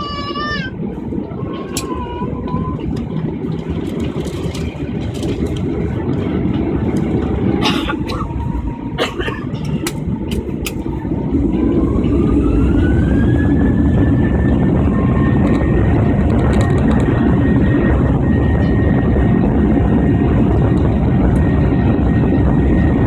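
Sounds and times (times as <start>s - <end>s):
airliner cabin rumble: 0.0s - 23.0s
jet engine whine: 0.0s - 23.0s.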